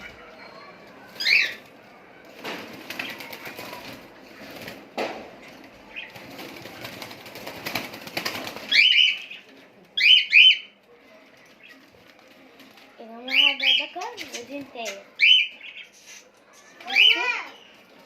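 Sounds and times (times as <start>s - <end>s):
rustling and fluttering: 0.0s - 10.0s, 10.8s - 15.1s
cockatiels screeching: 16.8s - 17.4s.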